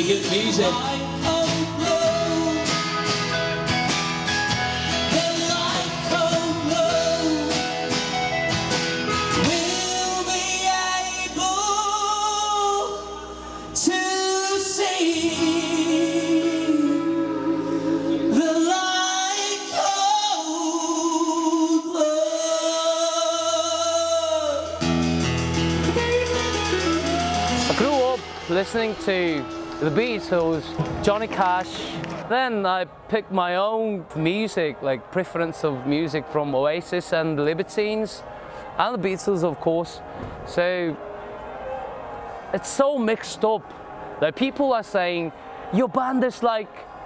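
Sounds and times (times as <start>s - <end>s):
person singing: 0.0s - 3.3s, 5.0s - 8.2s, 9.4s - 24.9s, 25.8s - 32.1s
band playing drums guitar bass: 0.0s - 9.9s, 24.8s - 32.3s.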